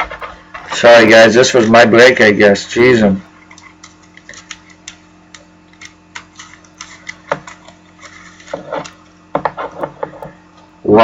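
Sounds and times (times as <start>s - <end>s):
faint steady hum: 0.0s - 11.0s
trading cards clicking: 3.4s - 9.0s.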